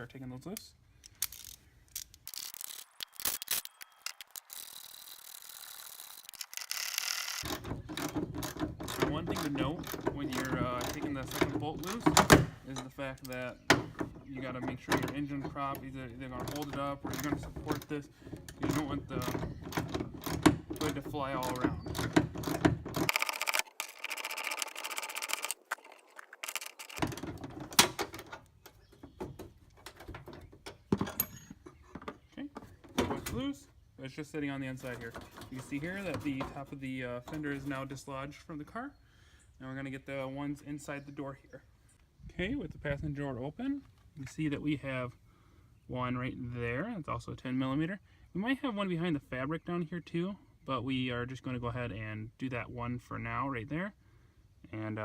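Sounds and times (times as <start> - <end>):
ratchet wrench clicking: 1.1 - 7.7.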